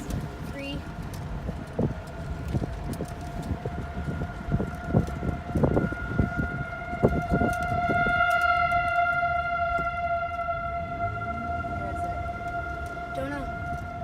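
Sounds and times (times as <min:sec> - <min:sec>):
low rumble: 0:00.0 - 0:14.0
warning siren steady tone: 0:01.5 - 0:14.0.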